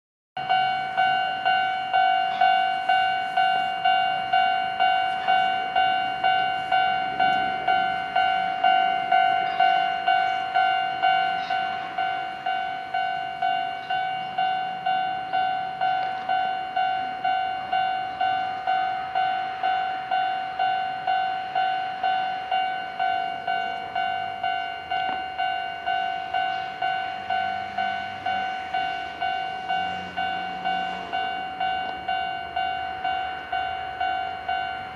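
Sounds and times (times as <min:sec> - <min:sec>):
level crossing electronic bell: 0:00.4 - 0:34.9.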